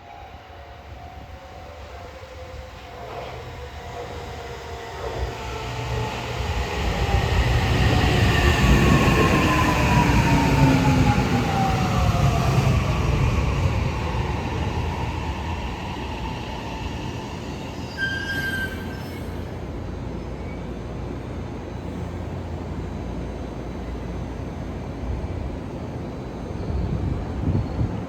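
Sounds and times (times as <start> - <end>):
electric train rumbling: 0.0 - 28.0
high squeal: 17.3 - 19.6.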